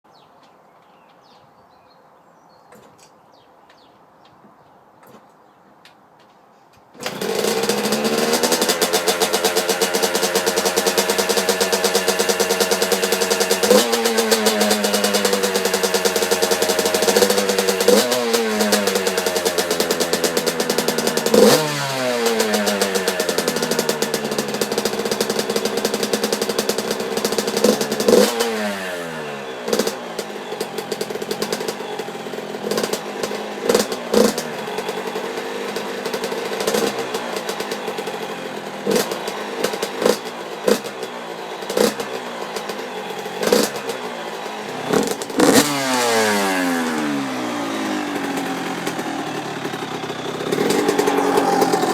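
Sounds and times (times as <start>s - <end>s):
two-stroke engine revving: 7.0s - 51.9s.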